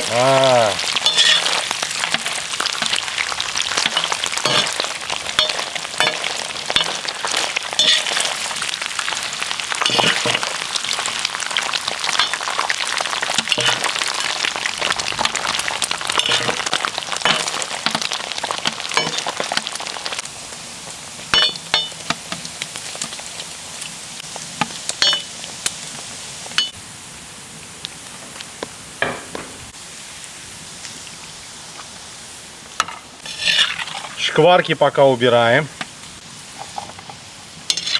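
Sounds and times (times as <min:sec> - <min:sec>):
fat sizzling and crackling: 0:00.0 - 0:37.9.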